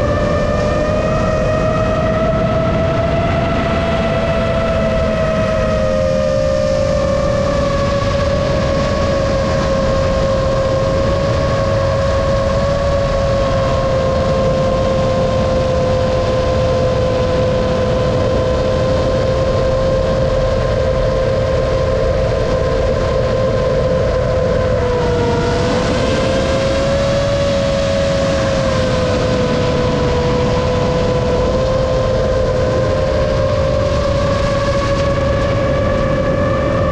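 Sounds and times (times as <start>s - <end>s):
quadcopter motors whining: 0.0s - 36.9s
wind noise: 0.0s - 36.9s.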